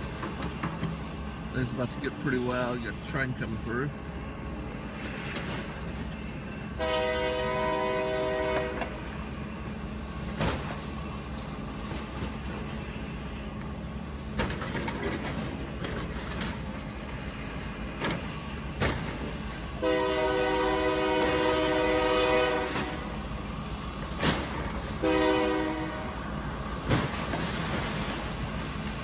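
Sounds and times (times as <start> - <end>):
passing train rumble: 0.0 - 29.0
train horn blasts: 6.8 - 9.0, 19.8 - 23.2, 25.0 - 26.2.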